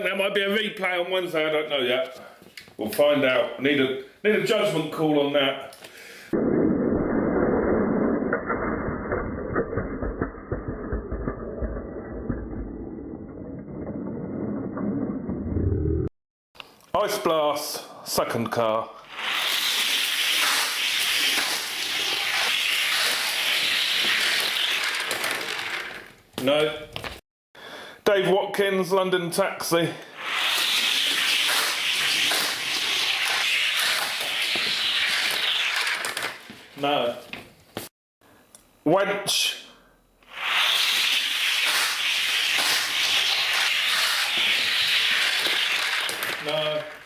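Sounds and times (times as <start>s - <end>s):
toy car wheels rolling on track: 19.1s - 26.1s, 30.2s - 36.4s, 40.4s - 47.0s.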